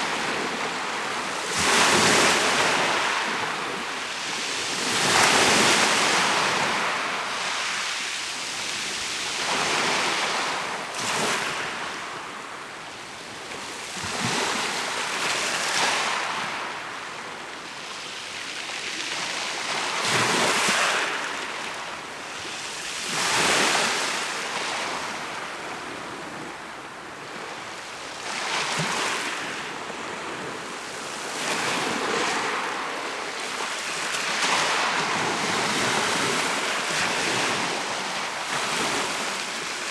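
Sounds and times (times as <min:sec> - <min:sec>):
waves breaking on shore: 0:27.3 - 0:39.9.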